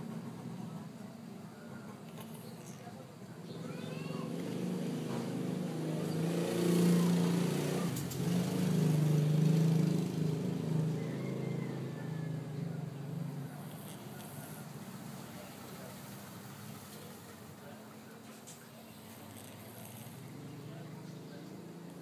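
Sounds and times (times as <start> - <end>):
cat snoring: 13.2 - 15.6, 19.0 - 22.0.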